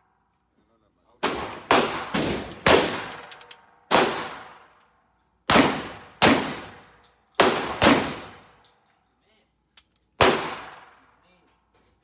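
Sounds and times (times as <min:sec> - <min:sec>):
gunshots with ringing echo: 0:01.2 - 0:03.2, 0:03.9 - 0:04.6, 0:05.5 - 0:06.8, 0:07.4 - 0:08.4, 0:10.2 - 0:11.1
light metallic clinks: 0:08.6 - 0:10.2.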